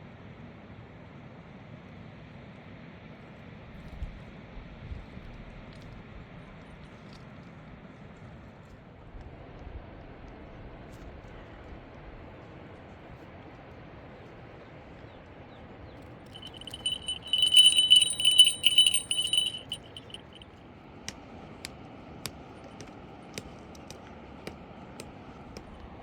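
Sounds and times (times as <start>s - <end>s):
small metal bell jingling: 16.4s - 20.4s.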